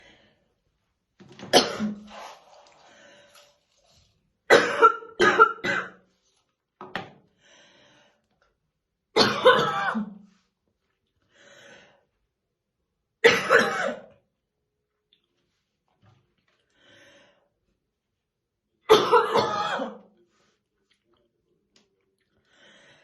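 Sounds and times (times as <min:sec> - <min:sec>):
woman coughing: 0:01.5 - 0:02.0, 0:04.5 - 0:06.0, 0:09.2 - 0:10.2, 0:13.2 - 0:14.1, 0:18.9 - 0:20.0.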